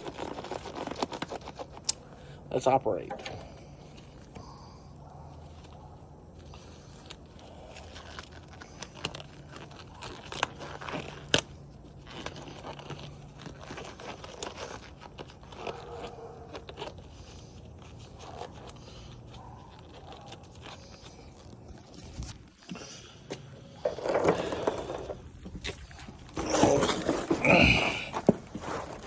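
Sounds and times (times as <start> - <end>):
metal tools clinking and scraping: 2.9 - 3.6, 23.8 - 29.0.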